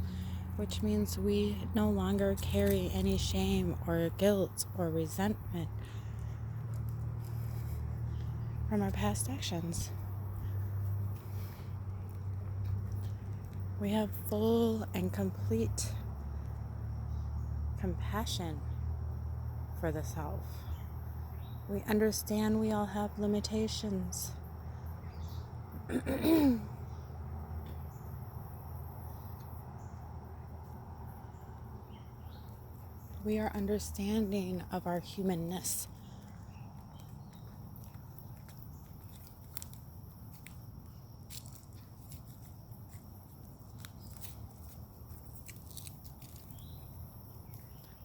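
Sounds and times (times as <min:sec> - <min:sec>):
faint footsteps on a path: 0:00.0 - 0:17.8, 0:23.8 - 0:48.0
low steady rumble: 0:00.0 - 0:25.8
high insect trill: 0:00.0 - 0:48.0
small crunches and clicks: 0:05.8 - 0:08.4, 0:10.8 - 0:13.6, 0:35.6 - 0:48.0.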